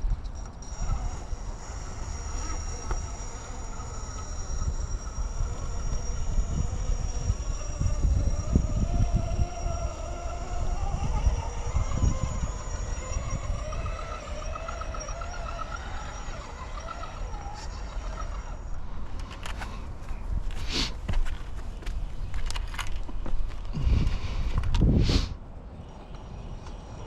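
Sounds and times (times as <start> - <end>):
electric motor whining: 0.3 - 19.8.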